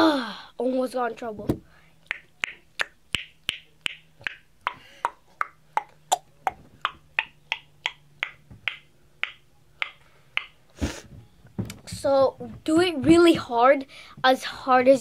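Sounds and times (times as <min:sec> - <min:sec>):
tongue clicks: 0:02.1 - 0:10.6.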